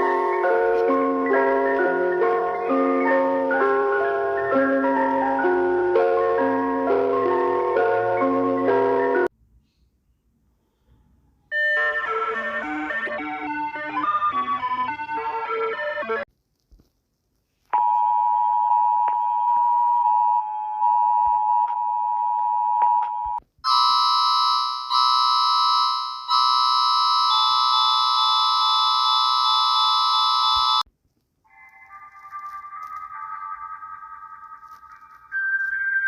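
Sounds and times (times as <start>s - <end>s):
harsh buzzy alarm tone: 23.7s - 30.8s.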